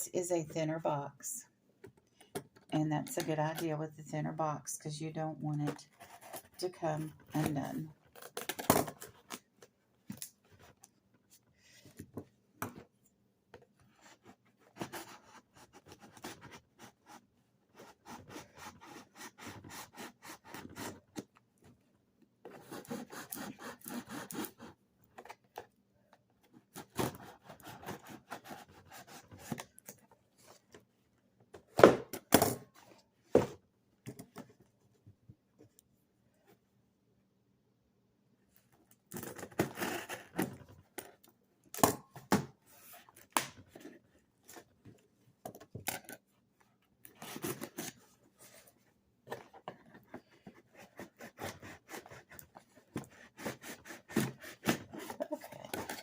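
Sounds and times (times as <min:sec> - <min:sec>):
packing tape scraped off cardboard: 0:22.5 - 0:24.8, 0:26.7 - 0:29.7, 0:39.1 - 0:40.6, 0:47.1 - 0:48.6, 0:49.9 - 0:56.0.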